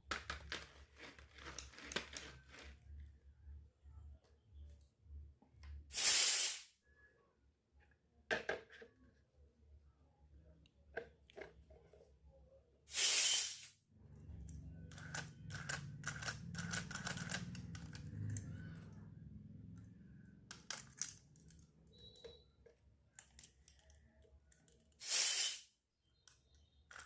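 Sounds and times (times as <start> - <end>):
small toy clicks and clinks: 14.5 - 18.6, 20.5 - 22.4, 23.1 - 25.0.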